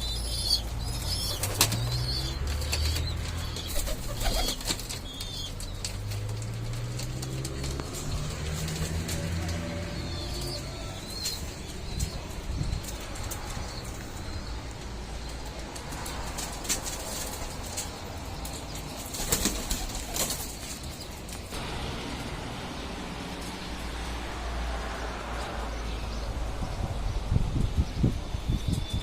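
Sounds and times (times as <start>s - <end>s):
pigeons flapping wings: 0.9s - 9.8s, 15.6s - 21.5s
low wind rumble: 6.3s - 18.9s, 21.5s - 29.0s.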